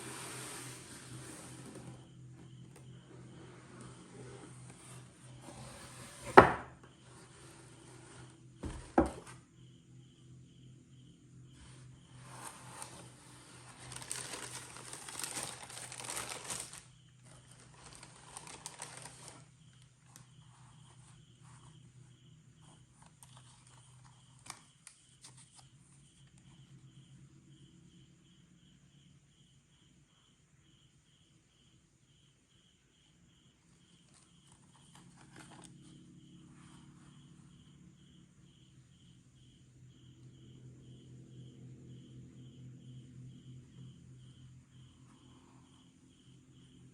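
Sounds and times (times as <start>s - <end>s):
handling noises: 11.6s - 21.8s
packaging crinkling: 13.6s - 19.5s.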